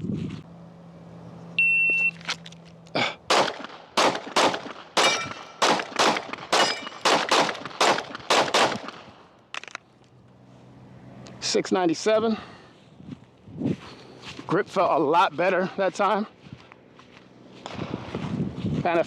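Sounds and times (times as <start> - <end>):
shot timer beep: 1.6 - 2.2
pistol shots: 3.3 - 9.2
steel target ringing: 5.0 - 5.6, 6.5 - 7.2.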